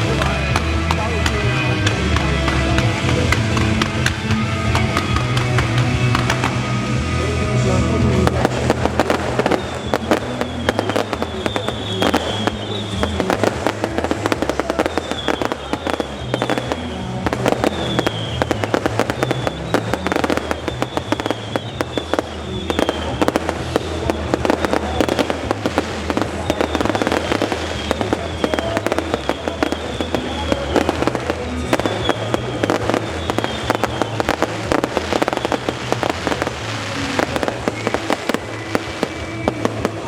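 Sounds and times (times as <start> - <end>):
fireworks bangs and crackles: 0.0 - 40.0
music playing: 0.0 - 40.0.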